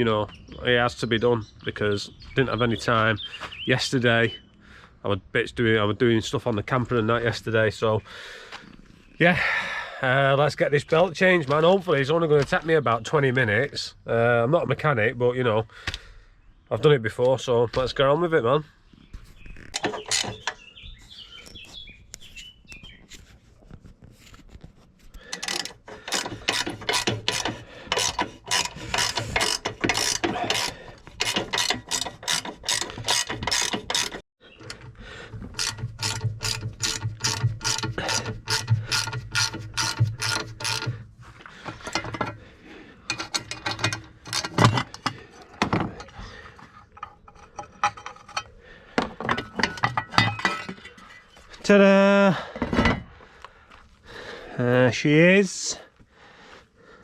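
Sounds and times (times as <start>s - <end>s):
ratchet clicking rapidly: 25.4s - 34.2s, 35.5s - 40.9s.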